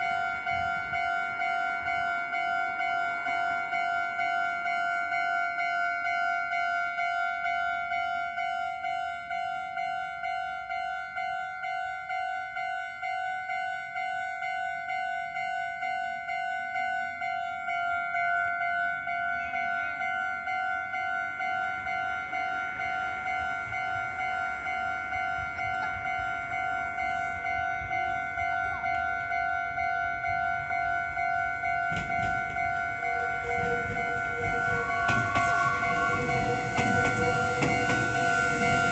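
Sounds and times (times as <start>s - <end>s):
level-crossing warning bell: 0.0s - 38.9s
train rumble: 21.5s - 38.9s.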